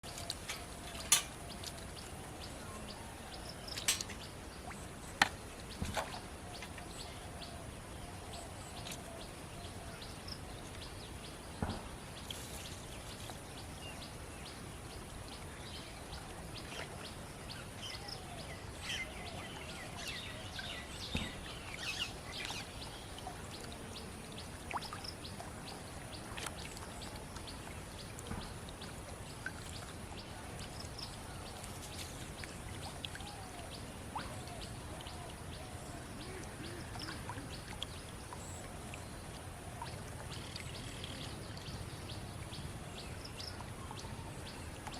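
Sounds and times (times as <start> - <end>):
birds chirping: 0.0 - 7.7
steady background hiss: 0.0 - 44.9.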